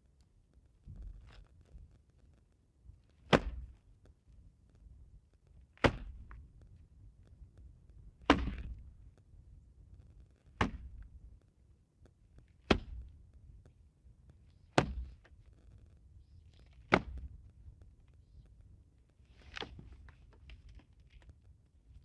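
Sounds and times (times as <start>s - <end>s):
sharp thunks: 3.3s - 3.8s, 5.8s - 6.3s, 8.3s - 8.8s, 10.6s - 10.9s, 12.7s - 13.1s, 14.8s - 15.2s.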